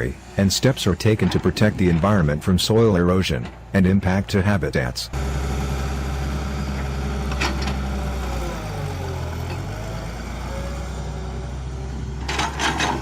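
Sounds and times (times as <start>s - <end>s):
excavator diesel engine running: 5.1s - 13.0s.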